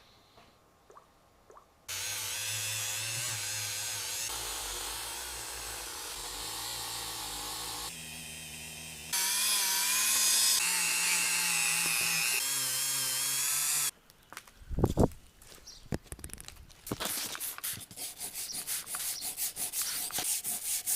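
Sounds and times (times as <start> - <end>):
power tool whining: 1.9 - 13.9.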